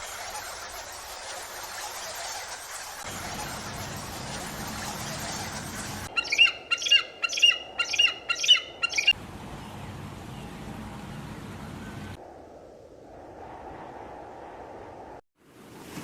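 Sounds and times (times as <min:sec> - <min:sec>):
bird calling loudly: 0:03.1 - 0:09.2.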